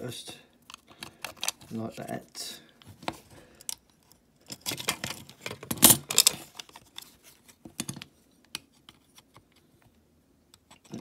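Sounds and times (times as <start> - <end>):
metal toy parts clicking and rattling: 4.4 - 7.0.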